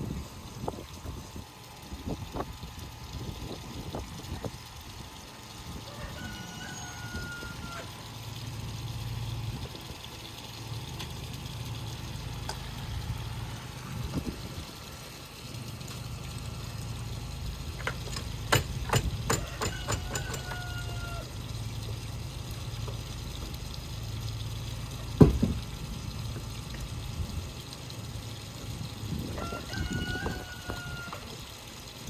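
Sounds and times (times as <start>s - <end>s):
engine idling: 7.6s - 29.4s.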